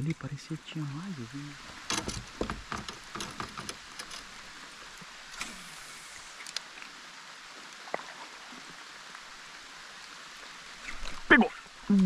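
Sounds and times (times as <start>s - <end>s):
water hiss: 0.0s - 12.0s
light clicks and knocks: 1.6s - 4.5s.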